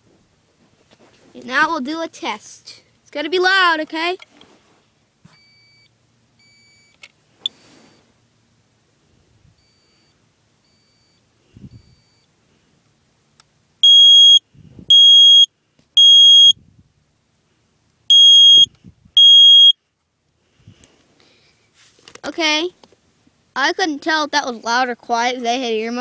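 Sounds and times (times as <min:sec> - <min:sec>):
faint smoke alarm chirps: 0:05.3 - 0:08.1, 0:09.6 - 0:12.3, 0:13.8 - 0:16.6, 0:18.1 - 0:19.8
smoke alarm beeping: 0:05.4 - 0:08.0, 0:11.8 - 0:12.3, 0:13.8 - 0:16.6, 0:18.1 - 0:19.8
smoke alarm click: 0:13.8 - 0:16.6, 0:18.1 - 0:19.7.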